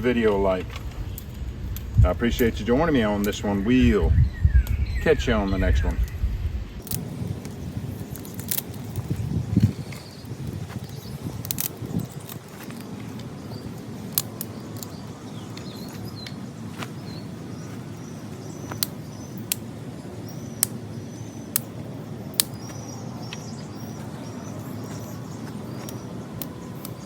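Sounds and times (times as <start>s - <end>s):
faint bird chirps: 3.6s - 6.4s
hiss of flames: 6.3s - 20.8s
wood fire crackling and popping: 6.8s - 17.8s.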